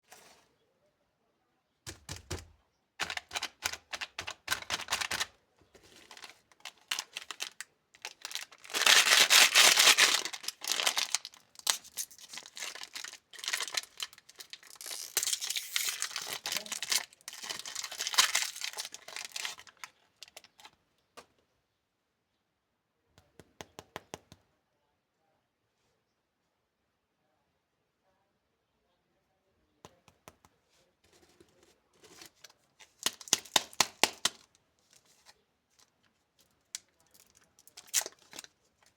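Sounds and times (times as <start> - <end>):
packaging tearing and crinkling: 3.0 - 20.7, 32.1 - 34.5, 36.8 - 38.6.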